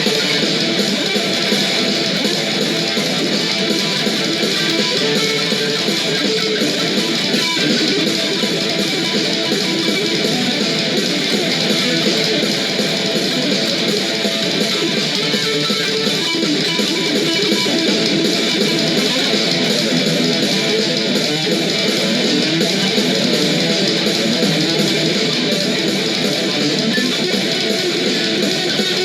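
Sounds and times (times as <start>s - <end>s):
heavy metal music: 0.0s - 29.0s.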